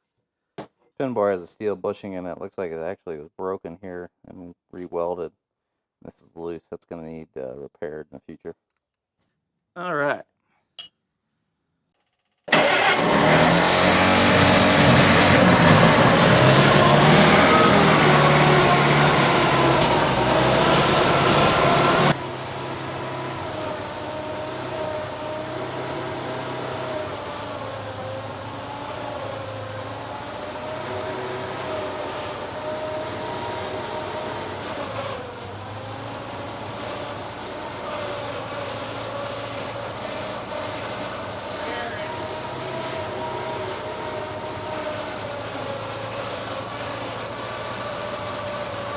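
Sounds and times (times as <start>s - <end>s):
skid loader engine running: 12.5s - 48.9s.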